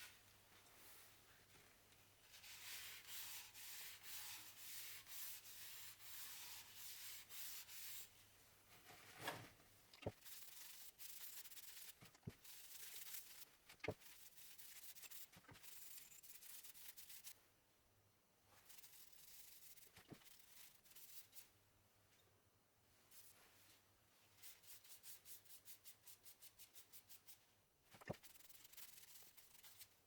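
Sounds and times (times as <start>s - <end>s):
hand sanding wood: 2.6s - 8.0s.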